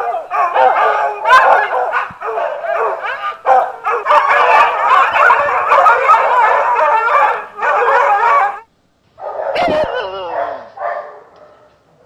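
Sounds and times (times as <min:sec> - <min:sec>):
dogs howling and yipping: 0:00.0 - 0:08.6.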